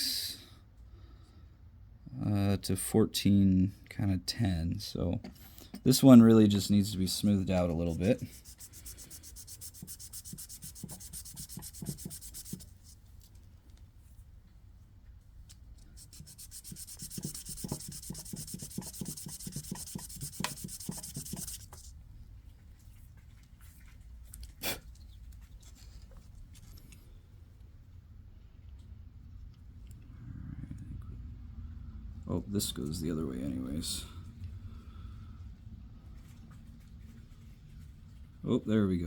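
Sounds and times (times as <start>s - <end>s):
plastic rubbed on sandpaper: 6.9s - 13.0s, 15.9s - 22.0s.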